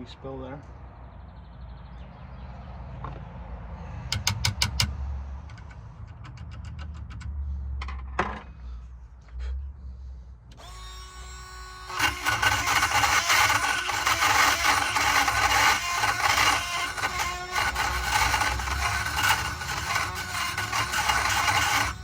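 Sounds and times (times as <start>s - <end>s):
power drill whining: 10.5s - 22.0s.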